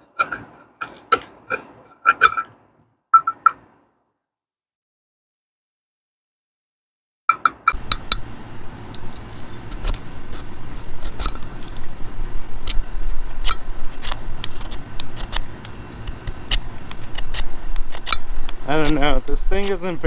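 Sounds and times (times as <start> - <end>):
metal grater scraping wood: 0.0 - 2.6, 8.9 - 20.0.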